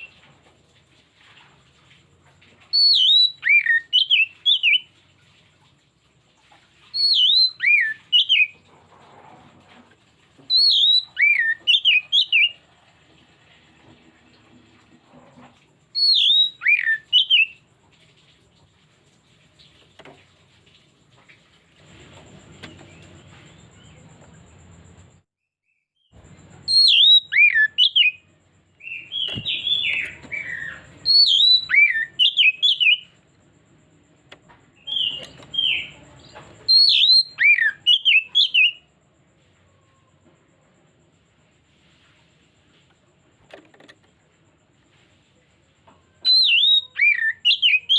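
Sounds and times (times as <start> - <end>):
bird singing whistled phrases: 2.7 - 4.9, 6.9 - 8.6, 10.5 - 12.6, 16.0 - 17.6, 26.6 - 33.2, 34.8 - 36.0, 36.7 - 38.8, 46.2 - 47.9.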